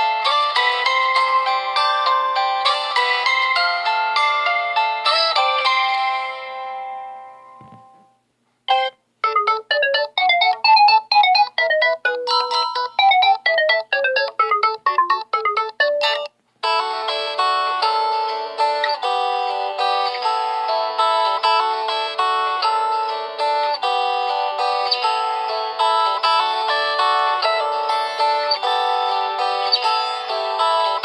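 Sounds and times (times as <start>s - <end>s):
phone ringtones: 8.7s - 16.3s.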